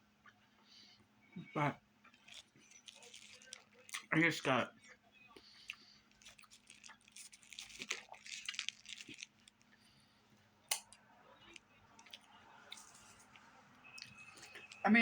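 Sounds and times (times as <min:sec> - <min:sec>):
person chewing food: 0:02.0 - 0:04.1, 0:05.4 - 0:10.0, 0:10.7 - 0:14.9.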